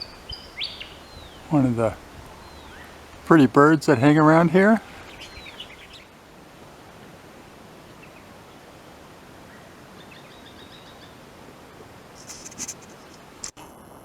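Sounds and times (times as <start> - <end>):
faint bird chirps: 0.0 - 3.2, 4.8 - 6.1
outdoor background noise: 0.0 - 14.0.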